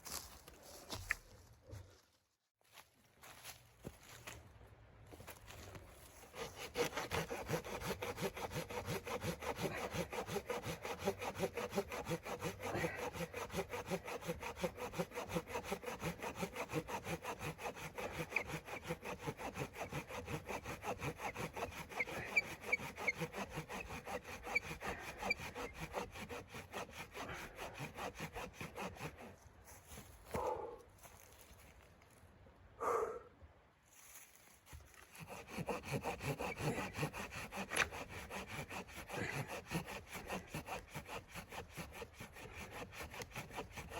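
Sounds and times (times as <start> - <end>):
hand saw cutting wood: 6.2 - 29.5, 34.7 - 43.9.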